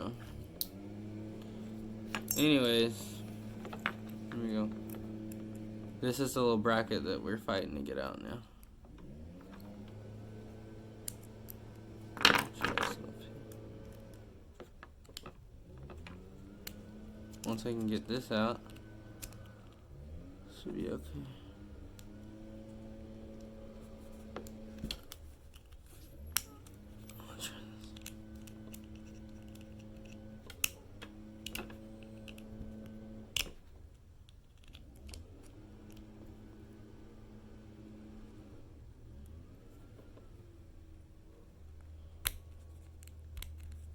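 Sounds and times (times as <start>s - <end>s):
scraping and rattling: 0.0s - 37.0s
steady low hum: 0.0s - 43.9s
small metal clicks and scrapes: 23.3s - 36.1s, 41.8s - 43.9s.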